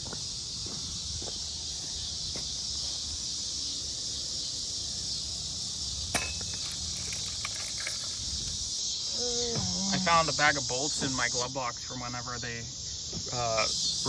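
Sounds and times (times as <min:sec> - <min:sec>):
insects chirring: 0:00.0 - 0:14.0
small metallic clinks: 0:06.1 - 0:08.7.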